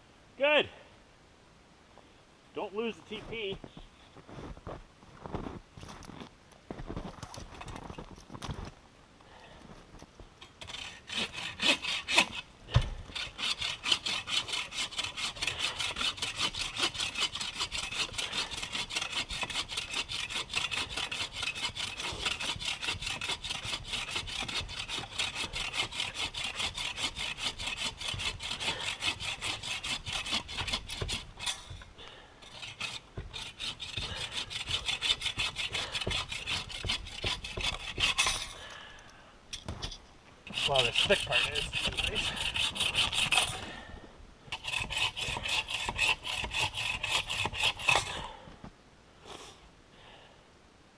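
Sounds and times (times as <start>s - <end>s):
hand saw cutting firewood: 10.4s - 38.9s, 40.5s - 43.9s, 44.5s - 48.5s.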